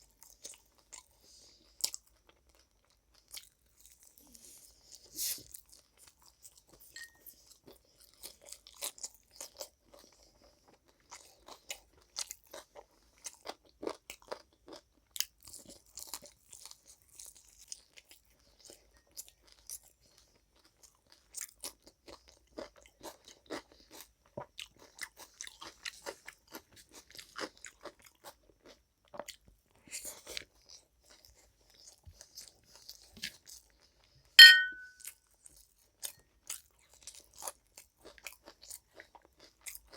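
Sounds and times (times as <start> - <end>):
wet chewing and crunching: 0.0 - 34.2, 34.8 - 39.9
sharp ringing clink: 34.4 - 34.9.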